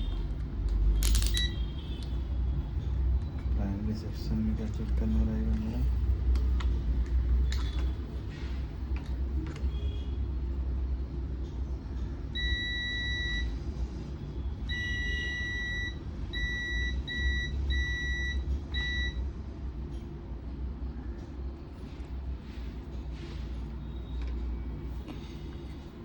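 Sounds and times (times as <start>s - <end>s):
low background hum: 0.0s - 26.0s
multimeter continuity beeps: 1.0s - 1.6s, 12.3s - 13.6s, 14.7s - 19.2s.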